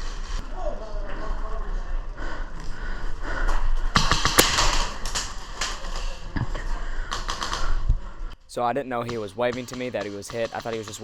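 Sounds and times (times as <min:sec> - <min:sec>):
airsoft gun shots: 0:04.0 - 0:06.0, 0:09.0 - 0:11.0.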